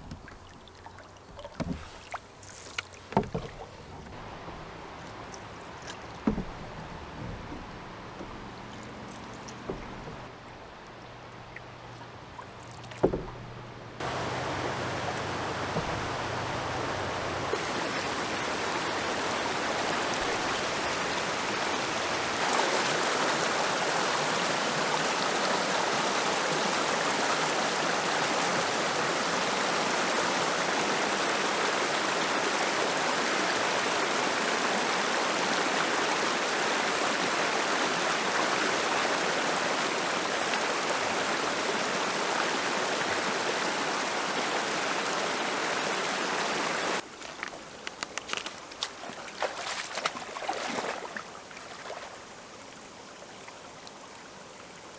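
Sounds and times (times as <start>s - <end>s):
steady rushing outdoor noise: 14.0s - 23.0s.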